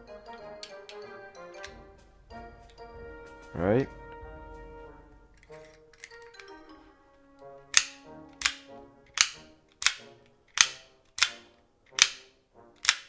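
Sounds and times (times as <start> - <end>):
faint music: 0.0 - 13.0
switchblade clicking: 7.7 - 13.0.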